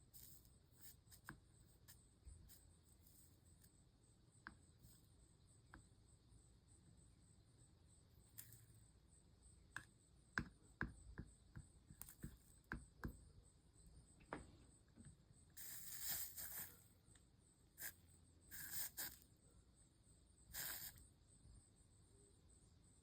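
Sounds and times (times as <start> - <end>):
flux sizzling under hot iron: 15.6 - 16.8, 17.8 - 19.3, 20.5 - 21.0.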